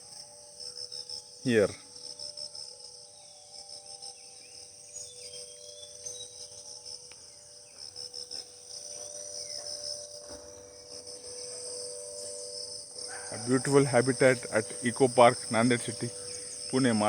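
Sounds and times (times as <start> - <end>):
crickets trilling: 0.0 - 17.0
faint bird chirps: 2.9 - 17.0.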